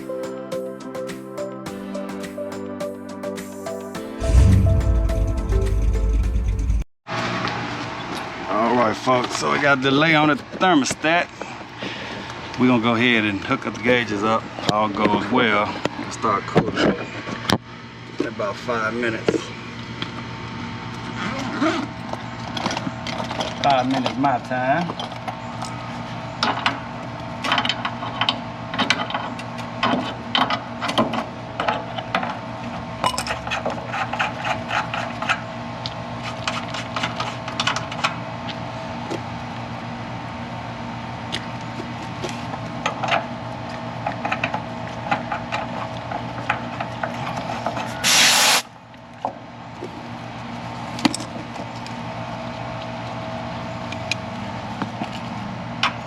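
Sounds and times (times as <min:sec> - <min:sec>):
sharp hiss of refrigerant: 0:48.0 - 0:48.7.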